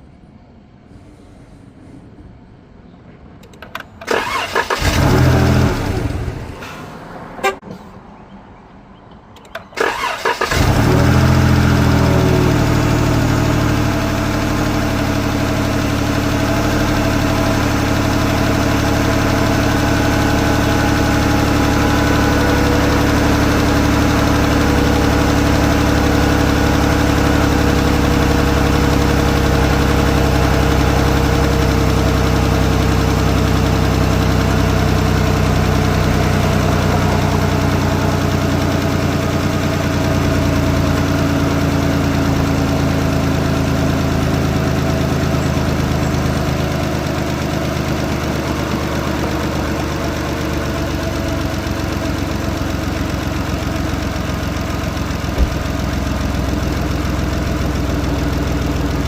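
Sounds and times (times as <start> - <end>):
click: 3.4 - 4.1, 9.3 - 9.7
car engine starting and idling: 3.4 - 7.9, 9.3 - 59.0.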